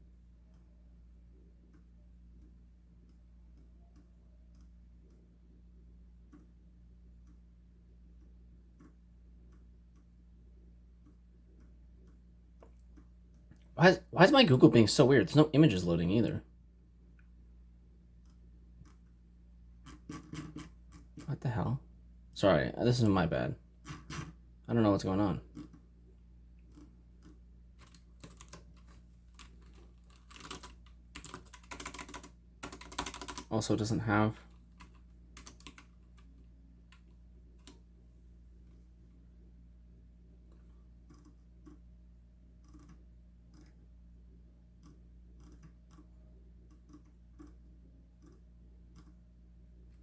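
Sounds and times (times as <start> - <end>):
low steady hum: 0.0 - 50.0
typing on computer keyboard: 19.8 - 21.1, 26.7 - 33.5, 34.7 - 37.8, 42.6 - 43.8, 44.8 - 46.1, 46.7 - 47.6
computer clicks: 26.7 - 33.5.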